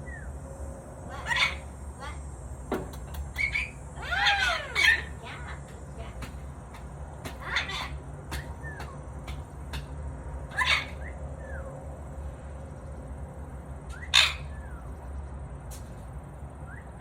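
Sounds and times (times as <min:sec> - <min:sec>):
bird squawking harshly: 0:01.1 - 0:01.7, 0:03.4 - 0:05.2, 0:07.4 - 0:08.0, 0:10.5 - 0:11.0, 0:14.1 - 0:14.6.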